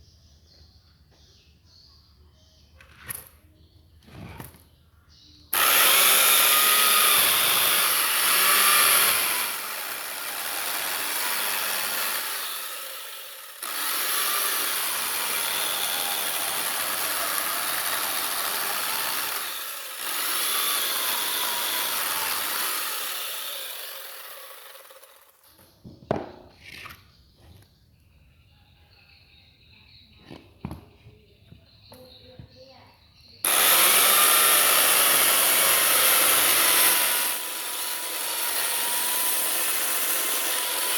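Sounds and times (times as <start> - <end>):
chainsaw cutting wood: 5.5 - 25.6, 33.4 - 40.9.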